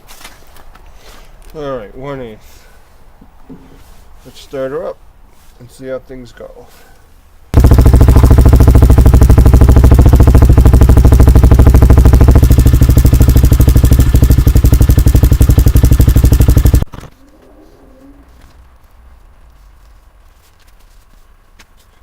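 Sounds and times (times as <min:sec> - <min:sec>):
motorcycle engine idling: 0:07.6 - 0:16.9.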